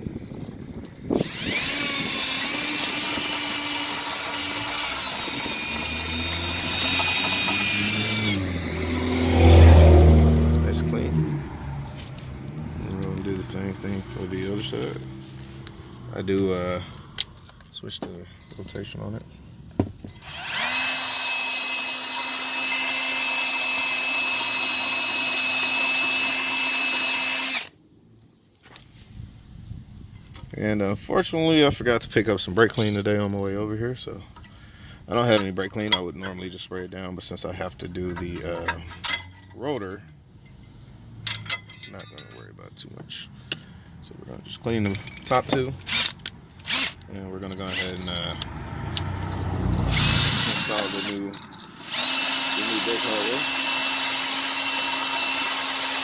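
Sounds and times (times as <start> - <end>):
power drill with wire brush scraping: 1.1 - 9.7, 20.1 - 27.7, 45.0 - 48.4, 49.4 - 56.0.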